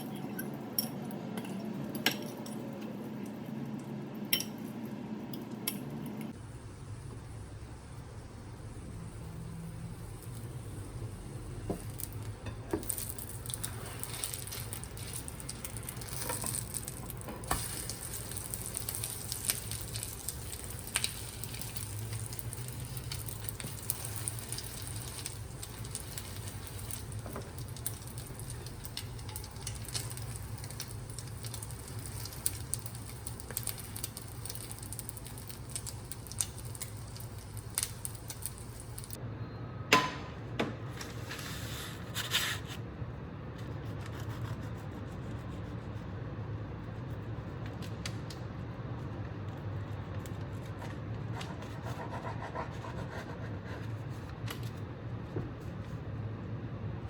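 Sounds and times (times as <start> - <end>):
food sizzling in a frying pan: 6.5 - 39.2.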